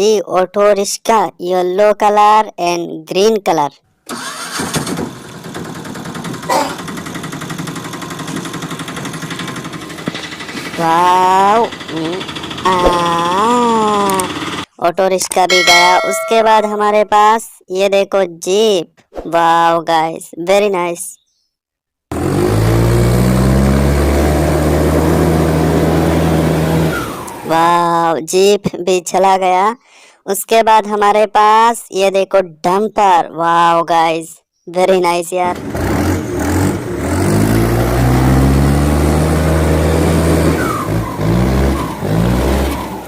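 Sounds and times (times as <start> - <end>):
vehicle engine running: 5.2 - 14.6
vehicle engine drone: 22.1 - 27.5, 35.5 - 43.0.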